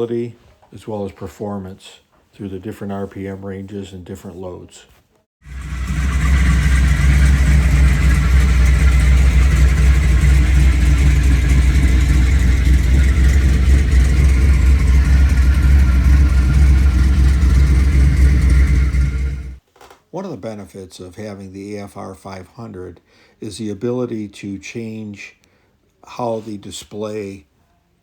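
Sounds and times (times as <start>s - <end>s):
engine running with deep rumble: 5.4s - 19.6s.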